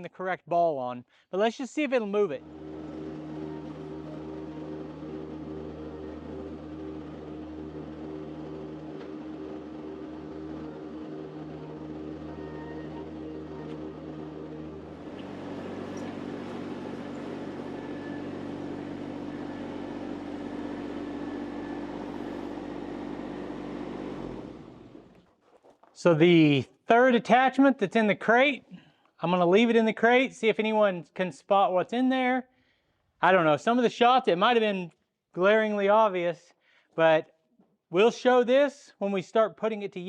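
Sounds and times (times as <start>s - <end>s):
skid steer engine running: 2.4s - 25.3s.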